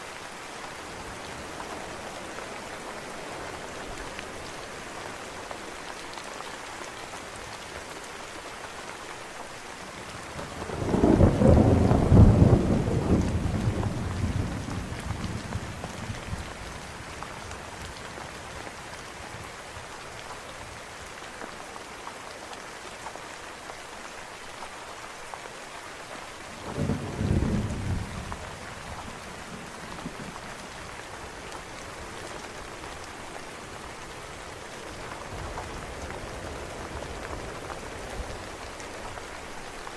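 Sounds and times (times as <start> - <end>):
steady rain falling: 0.0 - 39.9
rolls of thunder: 10.7 - 15.0.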